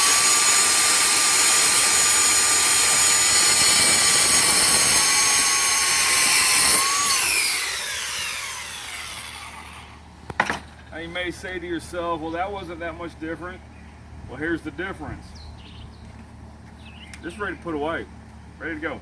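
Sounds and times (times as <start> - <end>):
circular saw whining and spinning down: 0.0 - 10.0.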